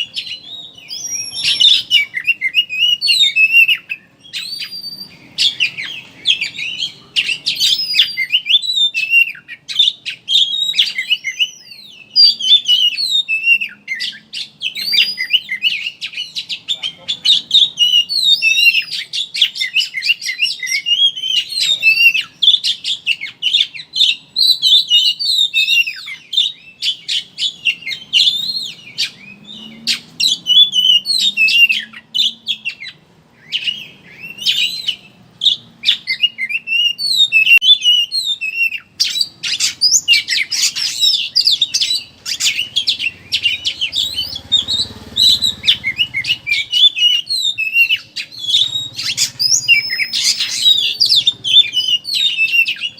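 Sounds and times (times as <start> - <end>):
magpie-robin singing: 0.0 - 52.9.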